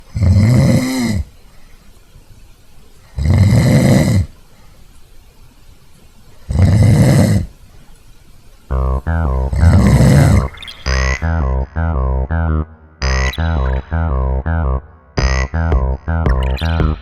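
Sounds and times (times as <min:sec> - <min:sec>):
person snoring: 0:00.1 - 0:01.3, 0:03.2 - 0:04.3, 0:06.5 - 0:07.5, 0:09.3 - 0:10.5.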